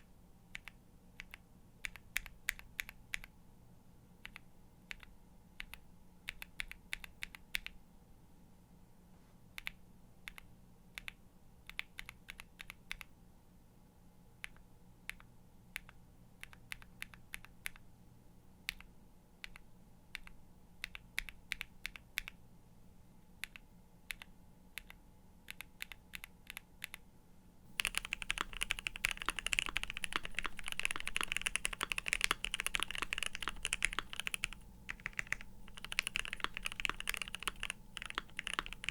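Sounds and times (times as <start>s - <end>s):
typing on mechanical keyboard: 11.0s - 13.1s, 27.7s - 38.9s.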